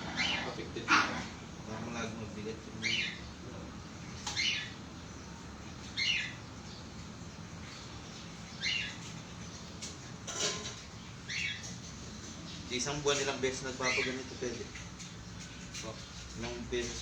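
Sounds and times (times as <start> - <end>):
bird chirping: 2.8 - 3.4, 4.1 - 9.8, 11.0 - 13.0, 13.7 - 16.2.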